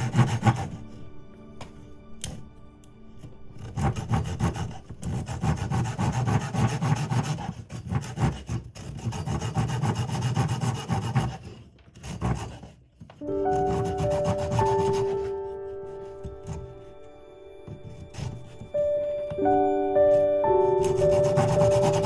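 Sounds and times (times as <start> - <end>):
saw cutting through wood: 0.0 - 1.2, 3.2 - 19.3, 20.0 - 22.0
soft music notes: 0.0 - 5.2, 13.2 - 22.0.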